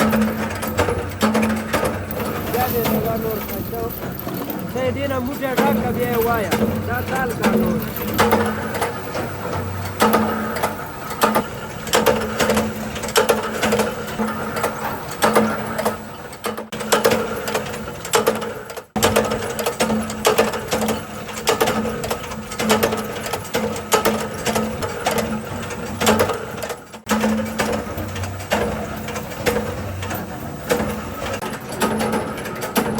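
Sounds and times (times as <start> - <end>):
machine clattering: 0.0 - 32.9
steady machine hum: 0.0 - 32.9.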